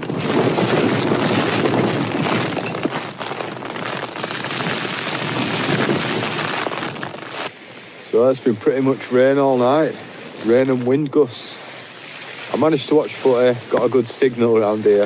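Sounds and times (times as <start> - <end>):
heavy rain on tent fabric: 0.0 - 7.5
wind gusts: 0.0 - 14.1.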